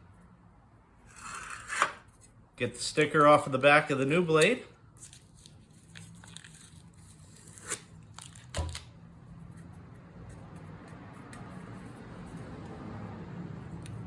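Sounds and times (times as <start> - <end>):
sticker tearing and scraping: 1.1 - 2.1.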